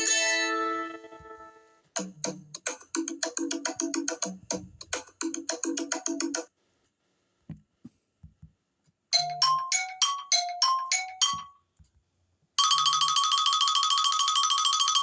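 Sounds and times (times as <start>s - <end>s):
rapid repeating ringing tone: 12.6s - 15.0s.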